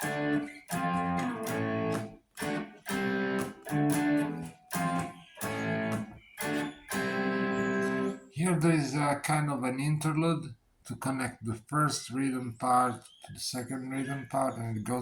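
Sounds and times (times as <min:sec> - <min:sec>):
electric guitar strumming chords: 0:00.0 - 0:08.2.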